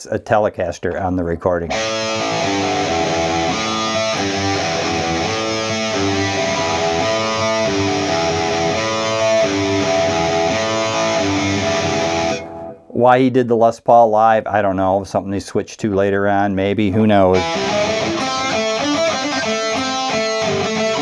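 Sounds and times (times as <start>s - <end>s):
electric guitar riff: 1.7s - 12.9s, 16.9s - 21.0s.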